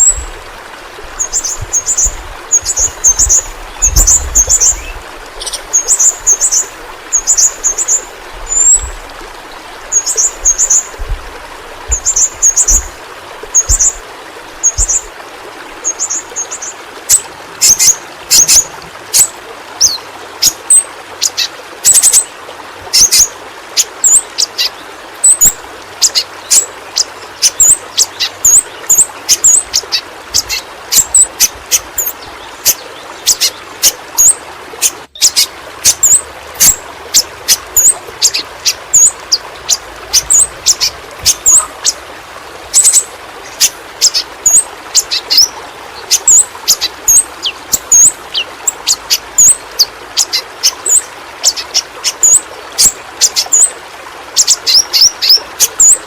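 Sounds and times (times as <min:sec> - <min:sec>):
bird high-pitched ticks and chirps: 0:01.2 - 0:08.9, 0:42.7 - 0:49.6.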